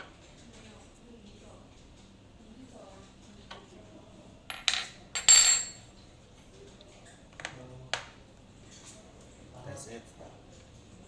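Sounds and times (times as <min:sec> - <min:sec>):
metal objects clinking: 0:04.5 - 0:05.8.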